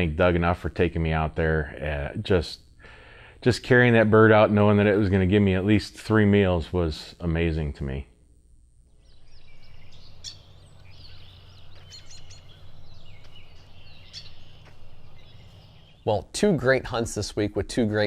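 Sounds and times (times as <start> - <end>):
songbirds chirping: 0.0 - 18.0
low background rumble: 8.3 - 17.2.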